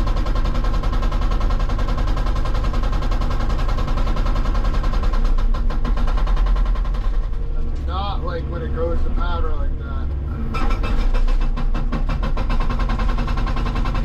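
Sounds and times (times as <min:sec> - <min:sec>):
hydraulic breaker hammering rock: 0:00.0 - 0:07.5, 0:10.5 - 0:14.0
excavator engine running: 0:00.0 - 0:14.0.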